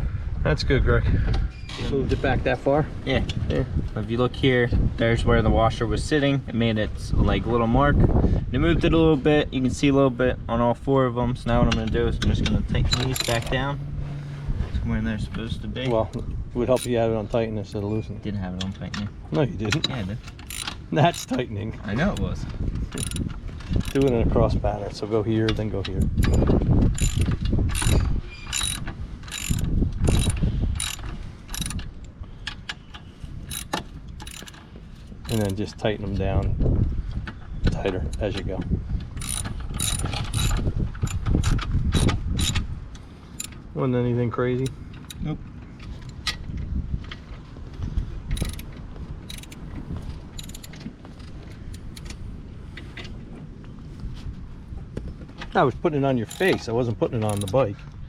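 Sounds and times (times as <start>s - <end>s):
ratchet wrench clicking: 12.9s - 13.6s, 20.3s - 21.4s, 22.9s - 24.2s, 26.0s - 31.9s, 33.5s - 34.6s, 35.3s - 35.6s, 39.2s - 42.6s, 43.4s - 43.6s, 48.3s - 49.7s, 50.4s - 50.8s, 56.2s - 56.6s, 57.2s - 57.6s.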